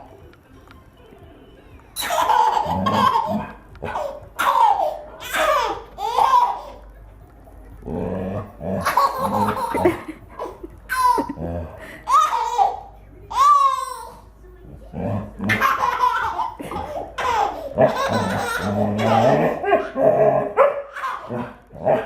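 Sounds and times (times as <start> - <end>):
baby laughing: 2.0 - 6.9, 8.8 - 14.2, 15.4 - 20.2, 20.8 - 22.0.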